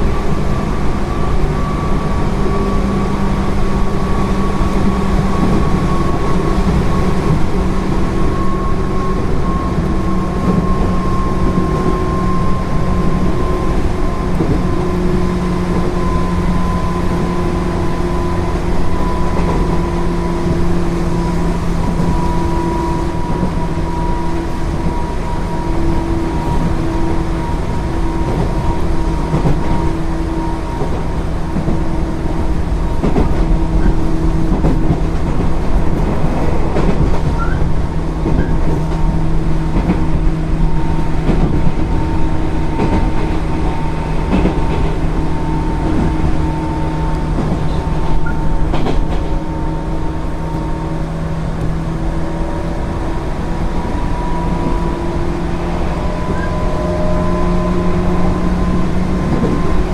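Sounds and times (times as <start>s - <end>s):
electric train motor whine: 0.0s - 59.9s
wheels clicking over rail joints: 18.9s - 46.4s.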